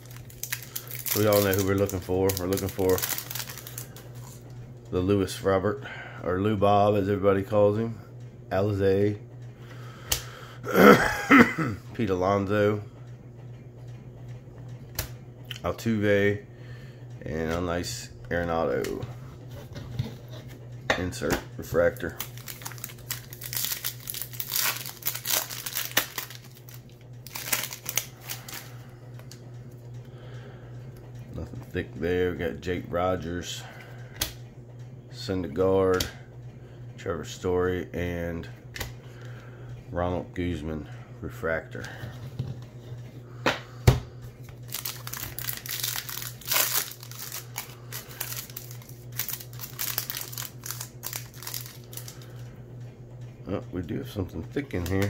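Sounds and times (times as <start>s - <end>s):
plastic wrapper crinkling and tearing: 0.0s - 4.4s, 21.9s - 28.7s, 44.6s - 52.3s
steady low hum: 0.0s - 55.0s.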